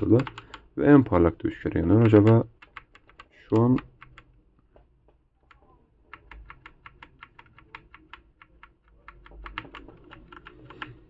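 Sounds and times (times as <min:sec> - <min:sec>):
mechanical keyboard key clicks: 0:00.0 - 0:00.6, 0:01.9 - 0:04.3, 0:05.5 - 0:11.0.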